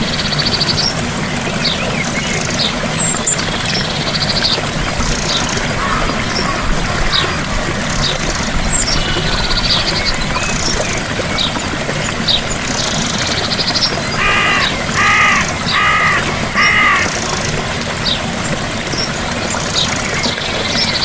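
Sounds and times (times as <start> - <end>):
waterfall rushing: 0.0 - 21.0
small birds trilling and chirping: 0.2 - 21.0
bird giving loud calls: 14.1 - 17.5.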